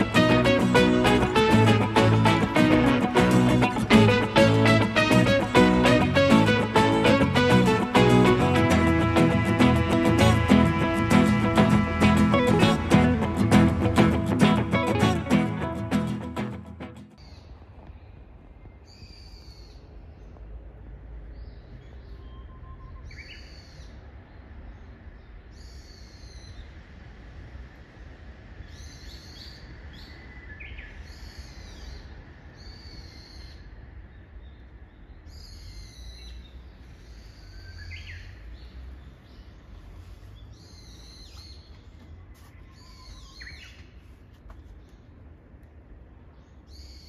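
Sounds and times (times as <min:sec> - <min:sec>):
small songbirds calling: 0:34.5 - 0:44.0, 0:46.4 - 0:47.0.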